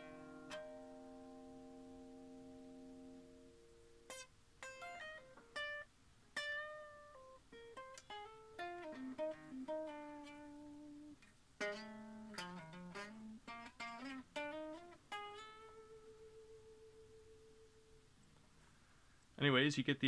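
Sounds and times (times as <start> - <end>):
guitar chord strummed: 0.0 - 17.9
clean electric guitar notes: 6.4 - 17.6.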